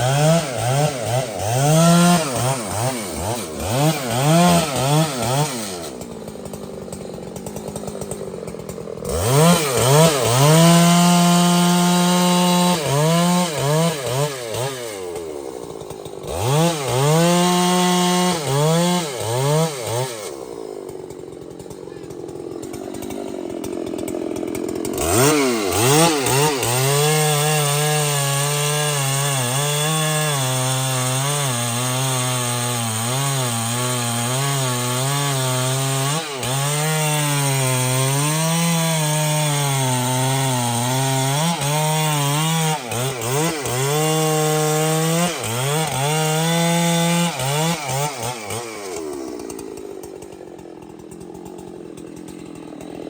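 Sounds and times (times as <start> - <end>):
chainsaw cutting wood: 0.0 - 53.0.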